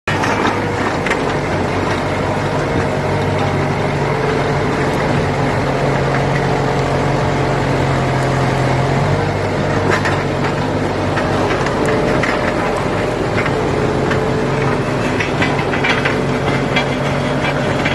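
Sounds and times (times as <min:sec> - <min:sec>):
tractor diesel engine running: 0:00.1 - 0:17.9.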